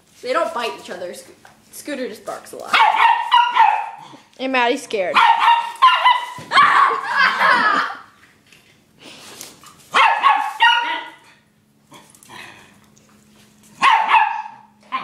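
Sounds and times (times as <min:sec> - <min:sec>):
small dog barking sharply: 0:02.8 - 0:04.0, 0:05.1 - 0:06.4, 0:09.9 - 0:11.2, 0:13.8 - 0:15.0.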